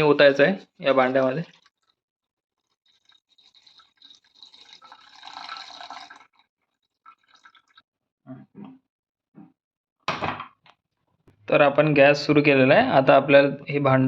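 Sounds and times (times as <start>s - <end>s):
water pouring into pot: 0.0s - 1.9s, 2.6s - 7.8s.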